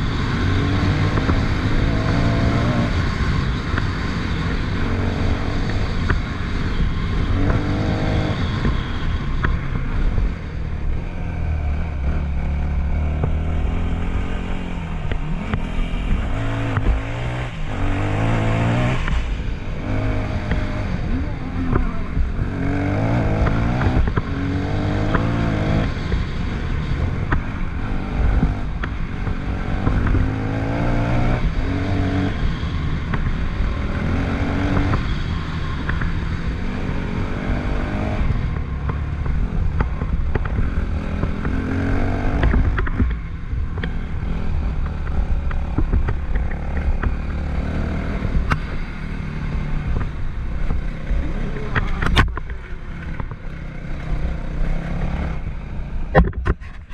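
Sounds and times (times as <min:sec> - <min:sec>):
sharp clicks and knocks: 0:12.8 - 0:19.3, 0:27.2 - 0:31.4, 0:33.0 - 0:55.4, 0:56.0 - 0:56.9.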